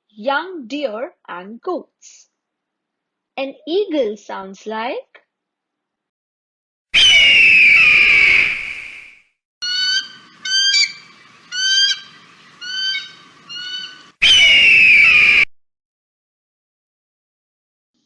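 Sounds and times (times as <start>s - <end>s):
eagle screaming: 7.0s - 9.0s, 9.6s - 15.5s
eagle piping calls: 9.6s - 15.4s.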